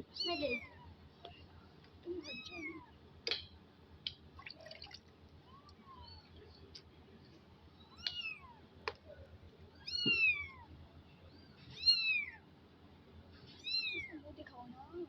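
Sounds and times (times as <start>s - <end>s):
kitten meowing: 2.2s - 2.9s, 9.8s - 10.7s, 11.7s - 12.4s, 13.6s - 14.2s.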